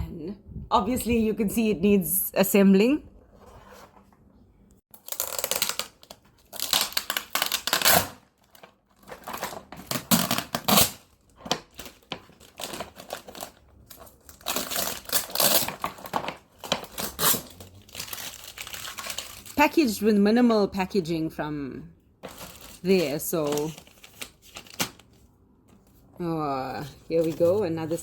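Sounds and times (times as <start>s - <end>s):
packaging rustling and crumpling: 5.0s - 19.6s, 22.2s - 26.0s.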